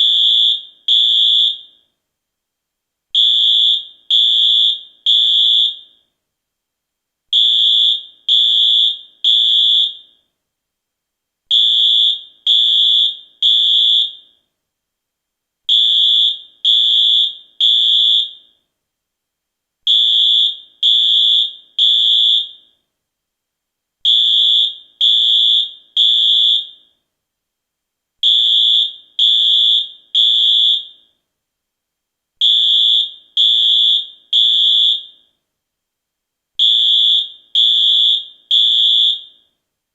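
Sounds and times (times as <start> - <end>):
fire alarm beeps: 0.0 - 2.0, 3.2 - 6.1, 7.4 - 10.3, 11.5 - 14.5, 15.7 - 18.7, 19.9 - 22.8, 24.1 - 27.0, 28.2 - 31.2, 32.4 - 35.4, 36.6 - 39.6.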